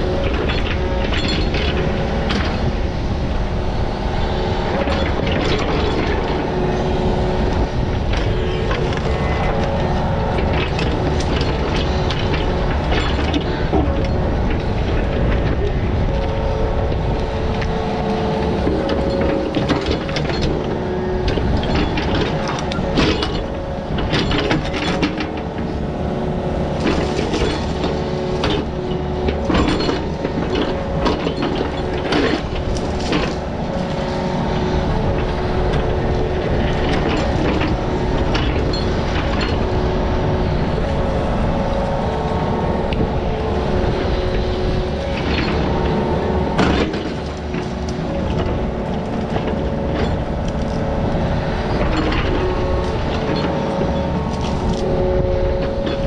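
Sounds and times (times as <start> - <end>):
excavator diesel engine under load: 0.0 - 56.0
hydraulic whine: 0.0 - 56.0
bucket clanking and scraping rocks: 26.6 - 34.8, 46.6 - 50.9, 51.8 - 55.0.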